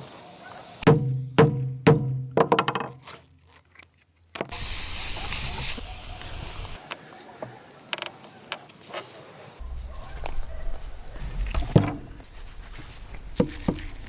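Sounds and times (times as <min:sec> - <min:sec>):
steady hiss: 0:04.5 - 0:06.9.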